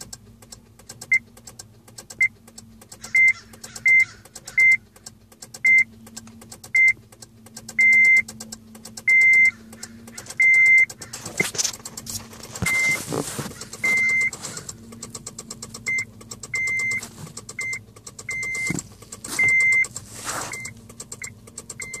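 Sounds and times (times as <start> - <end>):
car warning chime beeping: 0.0 - 22.0
clicks: 0.0 - 22.0
rustling: 11.0 - 14.9, 18.5 - 20.9.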